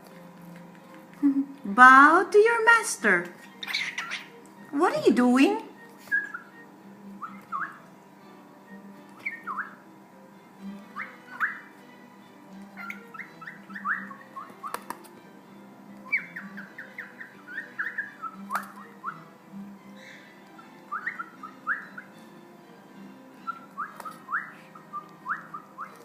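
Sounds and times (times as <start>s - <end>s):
cockatiel whistling: 3.4s - 4.4s, 6.0s - 7.9s, 9.2s - 9.8s, 10.9s - 11.8s, 12.8s - 15.0s, 16.0s - 19.3s, 20.6s - 22.2s, 23.4s - 26.0s.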